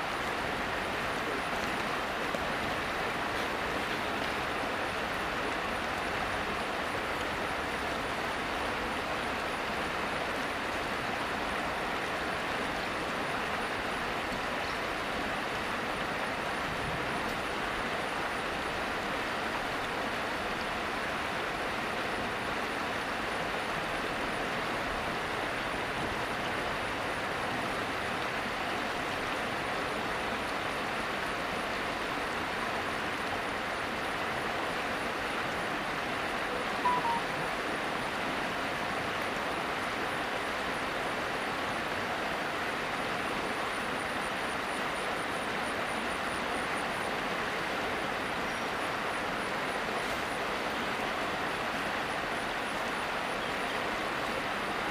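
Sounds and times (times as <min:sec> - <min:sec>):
fast-flowing river rushing: 0:00.0 - 0:54.9
brief high chirp: 0:36.8 - 0:37.4.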